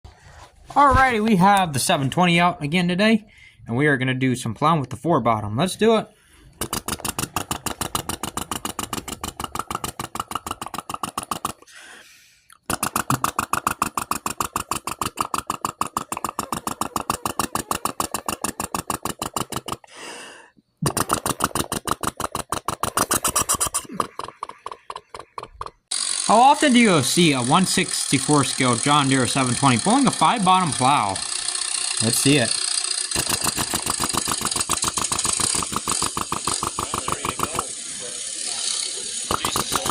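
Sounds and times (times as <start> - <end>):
person breathing: 0.1 - 0.7, 3.3 - 3.7, 6.1 - 6.6, 11.6 - 12.6, 19.8 - 20.6
person imitating tractor engine: 5.7 - 39.9.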